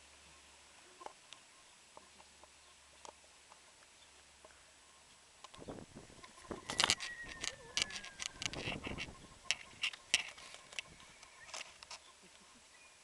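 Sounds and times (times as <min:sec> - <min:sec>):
rustling: 0:05.4 - 0:12.6.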